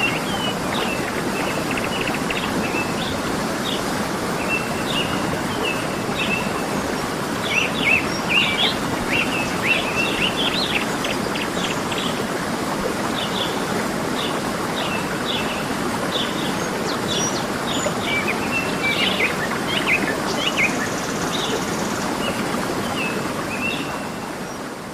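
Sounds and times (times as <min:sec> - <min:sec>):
waterfall rushing: 0:00.0 - 0:24.2.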